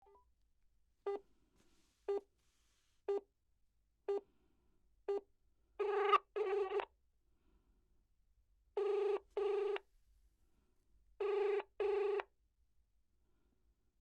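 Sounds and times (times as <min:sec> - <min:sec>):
telephone ringing: 0:08.8 - 0:09.8, 0:11.2 - 0:12.2.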